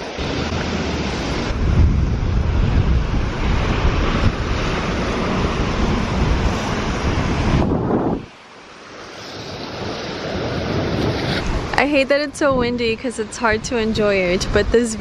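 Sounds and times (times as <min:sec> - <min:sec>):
wind buffeting microphone: 0:00.0 - 0:08.3, 0:09.3 - 0:15.0
fast river rushing: 0:00.0 - 0:12.0.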